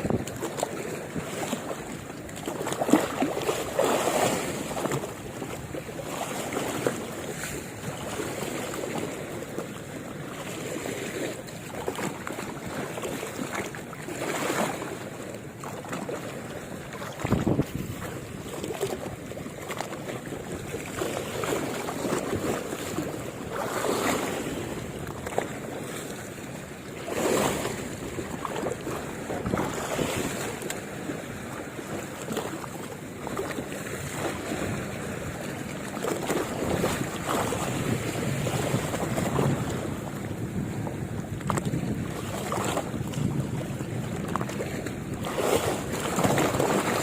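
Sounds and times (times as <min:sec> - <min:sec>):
wind gusting on microphone: 0:00.0 - 0:00.4, 0:17.1 - 0:18.3, 0:27.2 - 0:30.7, 0:36.4 - 0:47.0
waves washing on shore: 0:00.0 - 0:47.0.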